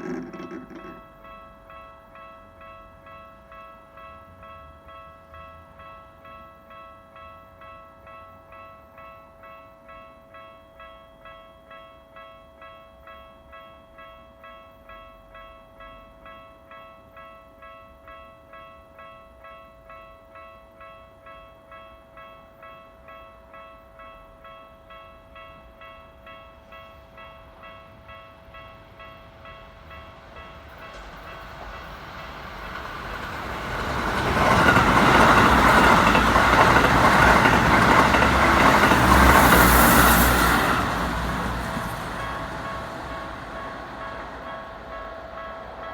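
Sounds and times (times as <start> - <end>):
electric train rumbling over crossing: 0.0 - 8.7, 24.0 - 45.9.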